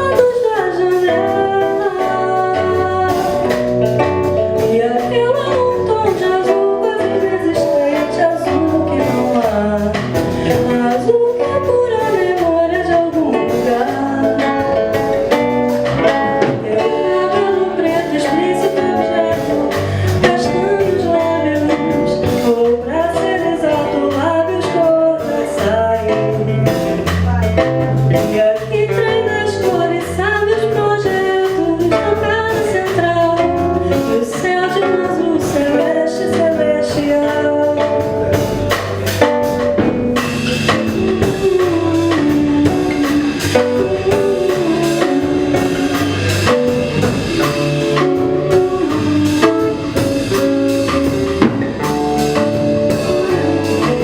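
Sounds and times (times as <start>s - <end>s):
acoustic guitar: 0.0s - 54.0s
bass: 0.0s - 54.0s
drums: 0.0s - 54.0s
woman singing: 0.0s - 54.0s.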